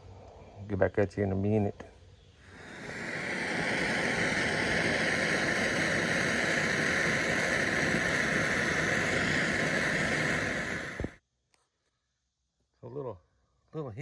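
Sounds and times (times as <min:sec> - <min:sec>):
torch burning with hiss: 0:02.4 - 0:11.2.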